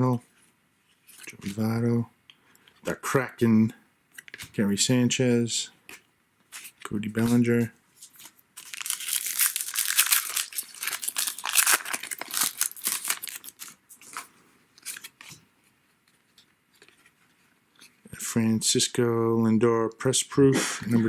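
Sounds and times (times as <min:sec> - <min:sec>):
card pack wrapper tearing: 0:08.1 - 0:15.2.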